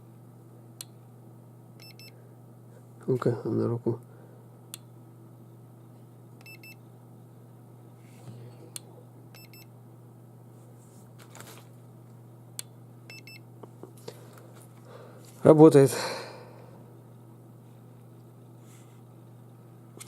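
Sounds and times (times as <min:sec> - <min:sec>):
thermometer double beeps: 0:06.4 - 0:06.8, 0:09.4 - 0:09.7, 0:13.1 - 0:13.4.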